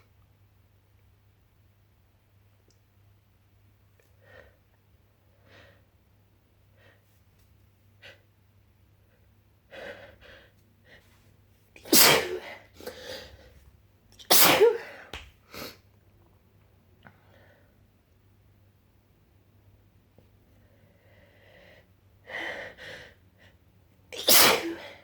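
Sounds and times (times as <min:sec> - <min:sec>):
person sneezing: 0:11.8 - 0:13.2, 0:14.2 - 0:15.8, 0:24.2 - 0:25.0.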